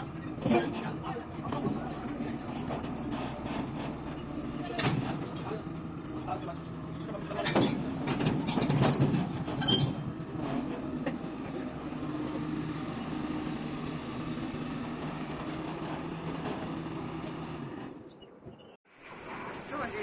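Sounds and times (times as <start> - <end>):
excavator diesel engine running: 0.0 - 18.0
metal clanking: 0.1 - 10.2.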